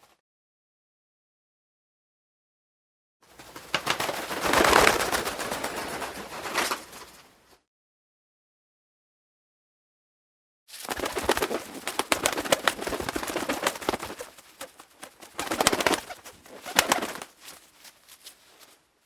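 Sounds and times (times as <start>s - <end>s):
birds clicking and calling: 10.9s - 17.6s.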